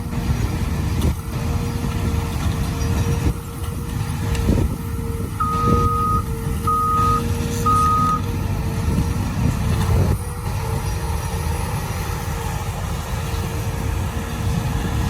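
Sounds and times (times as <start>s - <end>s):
diesel equipment rumbling: 0.0s - 15.0s
backup alarm beeps: 5.4s - 8.2s.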